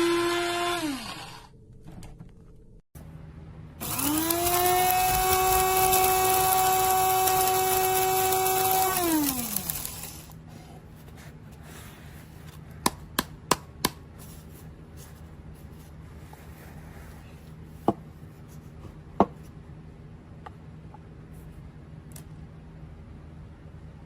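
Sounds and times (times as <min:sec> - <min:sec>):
low steady hum: 0:00.0 - 0:24.0
coffee grinder clicks: 0:03.8 - 0:10.3.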